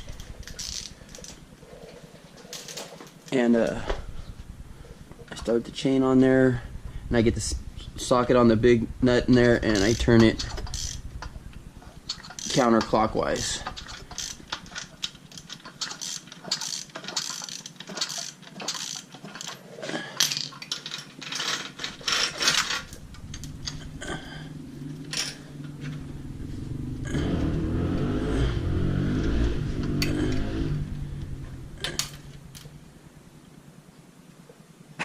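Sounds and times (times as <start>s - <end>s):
ratchet clicking: 0.0s - 1.4s, 9.4s - 19.6s
low whirring with light rattle: 0.0s - 35.0s.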